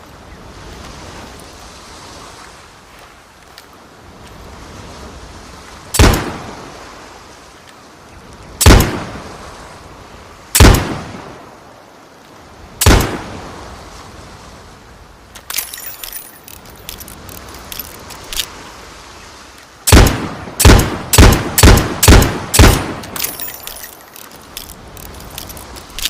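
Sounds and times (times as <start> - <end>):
loud gunshots: 6.0 - 6.5, 8.6 - 9.1, 10.6 - 11.1, 12.8 - 13.3, 19.9 - 23.1.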